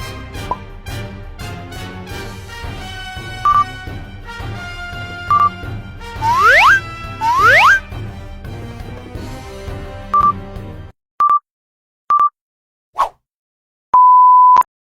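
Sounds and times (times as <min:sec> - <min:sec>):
background music: 0:00.0 - 0:10.9
short electronic beeps: 0:10.2 - 0:10.4, 0:14.0 - 0:14.7.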